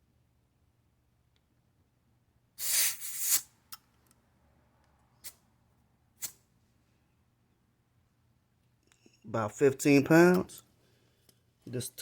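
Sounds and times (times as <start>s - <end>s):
air hissing from tire valve: 2.6s - 3.5s
short puffs of air: 2.6s - 3.5s.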